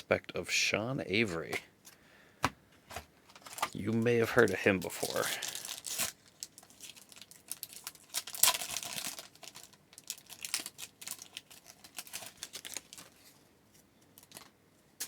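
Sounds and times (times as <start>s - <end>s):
cards rustling and clicking: 2.4s - 6.1s
card pack wrapper tearing: 3.4s - 13.3s.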